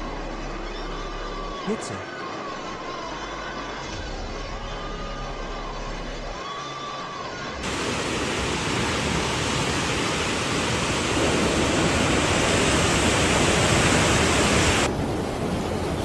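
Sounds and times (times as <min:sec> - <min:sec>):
loud rush of water: 0:06.4 - 0:16.0.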